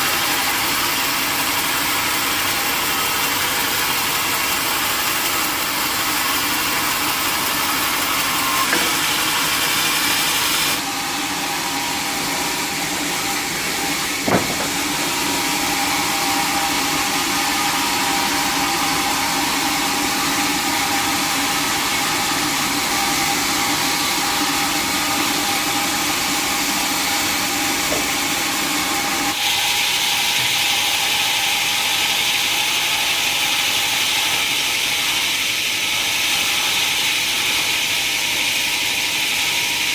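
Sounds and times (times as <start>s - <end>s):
sawmill machinery running: 0.0s - 39.9s
sharp knock: 14.2s - 14.9s.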